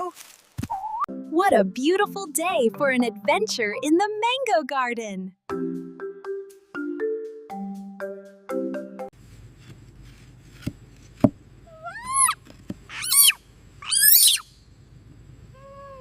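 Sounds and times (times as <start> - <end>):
low steady hum: 9.2 - 16.0
high-pitched animal cries: 11.7 - 14.5, 15.6 - 16.0.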